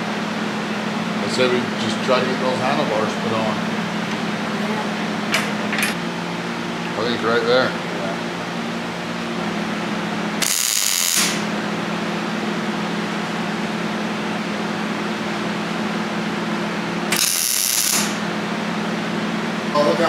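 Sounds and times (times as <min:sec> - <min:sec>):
steady machine hum: 0:00.0 - 0:20.0
harsh power tool bursts: 0:10.4 - 0:11.5, 0:17.1 - 0:18.2.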